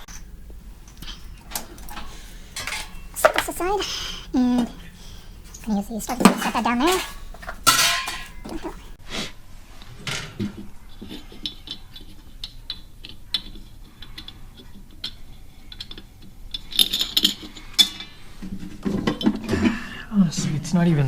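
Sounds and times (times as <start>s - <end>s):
metal parts clinking: 0.8s - 8.9s.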